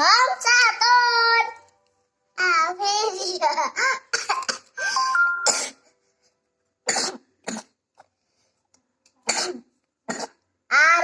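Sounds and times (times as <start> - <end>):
child coughing: 3.6 - 5.9, 6.9 - 7.8, 9.2 - 10.4.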